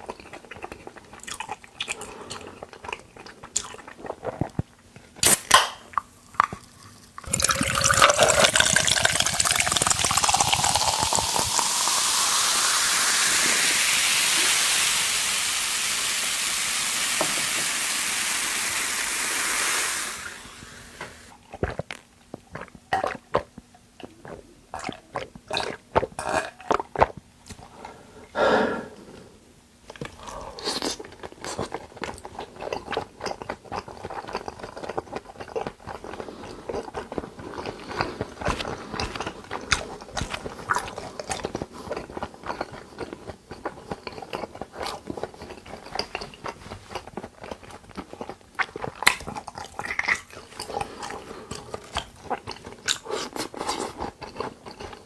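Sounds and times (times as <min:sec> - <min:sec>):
wet chewing mouth sounds: 0:00.0 - 0:11.6, 0:21.4 - 0:28.0, 0:29.9 - 0:55.0.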